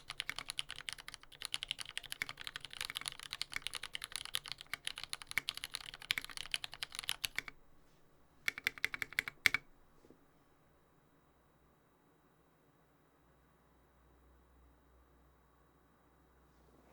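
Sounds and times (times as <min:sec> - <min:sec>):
mechanical keyboard typing: 0:00.0 - 0:07.6, 0:08.5 - 0:09.7.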